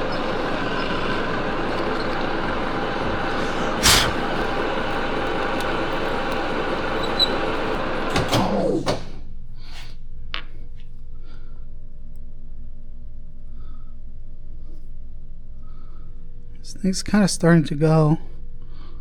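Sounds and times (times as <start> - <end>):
metal lathe running: 0.0 - 9.1
clunks: 0.0 - 9.2
lathe spindle whine spinning down: 0.0 - 9.2.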